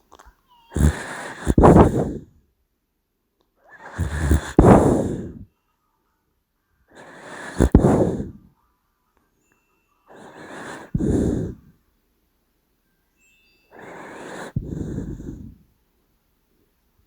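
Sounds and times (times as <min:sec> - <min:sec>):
dog snoring: 0:00.7 - 0:02.3, 0:03.8 - 0:05.5, 0:07.0 - 0:08.5, 0:10.1 - 0:11.7, 0:13.8 - 0:15.6.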